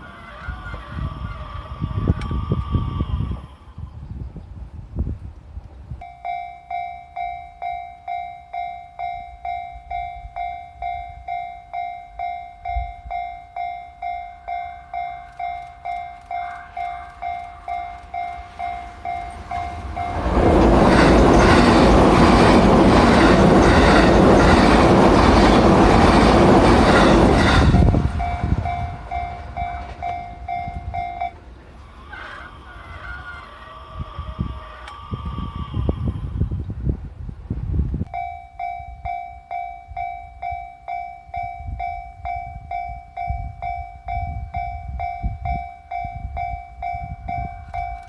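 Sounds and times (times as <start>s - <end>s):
crossing warning bell ringing: 6.0s - 31.8s, 38.0s - 48.0s
train passing: 6.0s - 48.0s.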